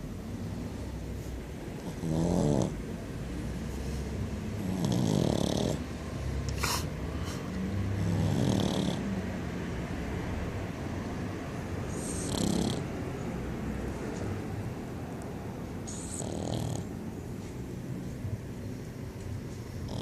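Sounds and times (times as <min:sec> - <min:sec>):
dog snoring: 0:01.8 - 0:02.8, 0:04.6 - 0:05.9, 0:08.0 - 0:09.1, 0:11.9 - 0:13.0, 0:15.8 - 0:17.0, 0:19.8 - 0:20.0.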